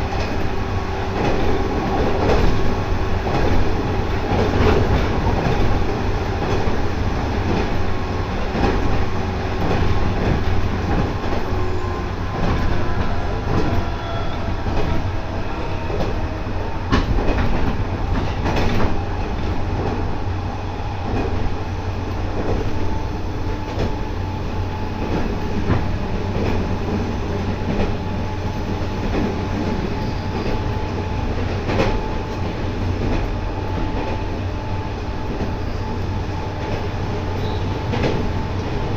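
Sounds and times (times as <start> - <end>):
train rumble with motor whine: 0.0 - 38.9.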